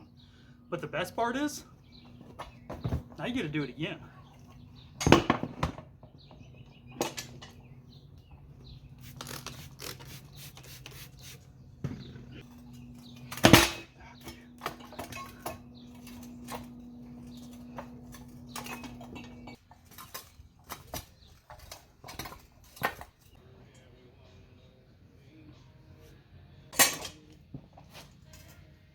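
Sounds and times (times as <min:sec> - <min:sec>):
metal clanks of tire changer: 0:11.9 - 0:21.0.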